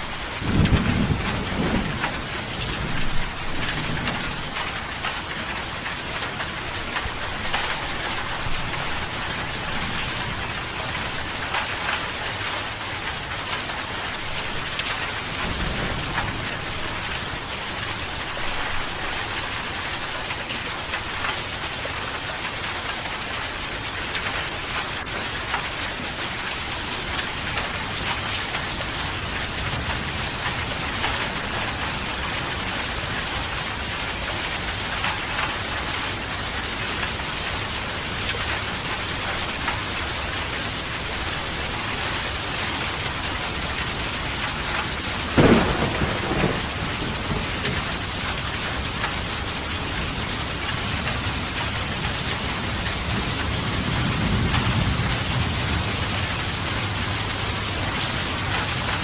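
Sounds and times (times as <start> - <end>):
steady rain: 0.0 - 59.0
thunderclap: 0.4 - 4.7, 15.4 - 16.7, 45.4 - 48.8.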